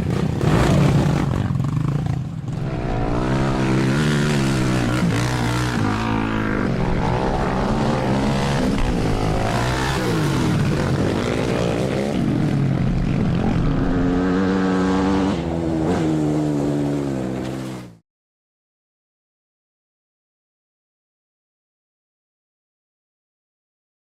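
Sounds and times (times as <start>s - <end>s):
quad bike engine revving: 0.0s - 18.0s.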